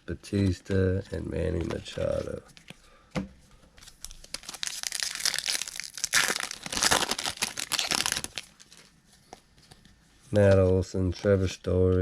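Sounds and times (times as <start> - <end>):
foil wrapper crinkling and tearing: 3.8 - 8.9.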